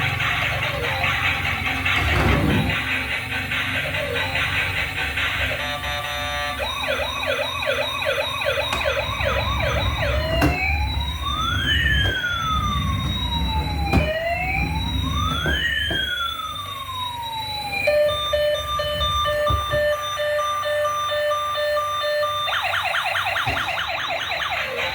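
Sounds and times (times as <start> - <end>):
toy siren: 0.0 - 24.9.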